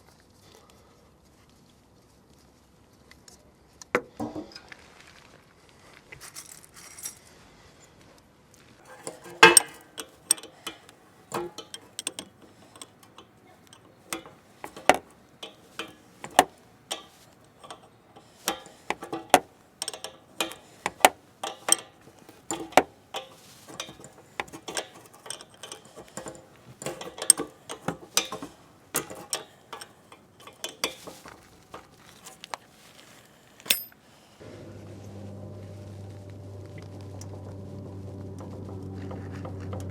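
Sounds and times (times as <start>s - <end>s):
metal tools clicking and clinking: 8.9s - 34.0s.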